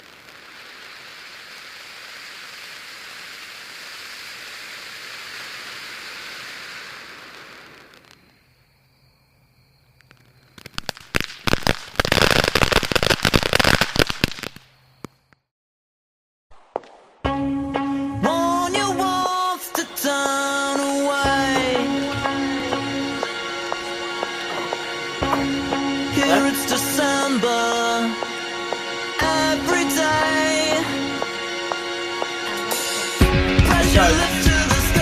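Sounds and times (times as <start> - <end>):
firecrackers popping: 0.0 - 8.4, 10.0 - 15.3, 16.5 - 17.3, 18.8 - 29.1
steady hiss: 0.0 - 8.5.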